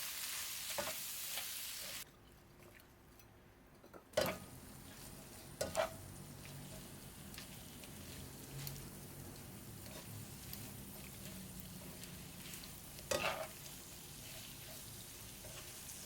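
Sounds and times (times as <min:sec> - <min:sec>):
food sizzling in pan: 0:00.0 - 0:02.0, 0:04.2 - 0:16.0
utensil clanking against pan: 0:04.2 - 0:04.5.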